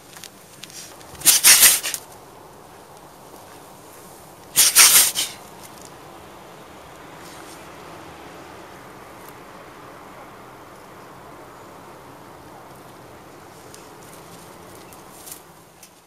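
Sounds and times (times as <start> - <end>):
dog sneezing: 0.8 - 2.0, 4.6 - 5.4.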